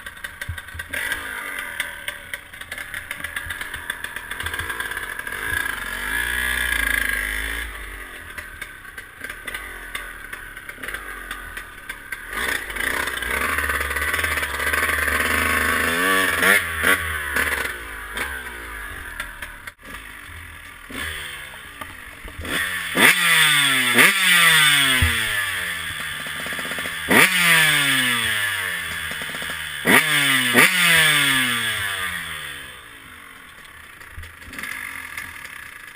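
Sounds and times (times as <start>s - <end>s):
two-stroke engine revving: 0.0s - 35.9s.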